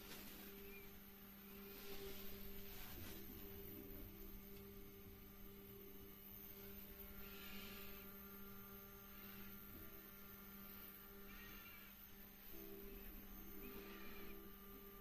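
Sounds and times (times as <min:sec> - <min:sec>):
soft hissing: 0:00.0 - 0:15.0
stepper motors humming: 0:00.0 - 0:15.0.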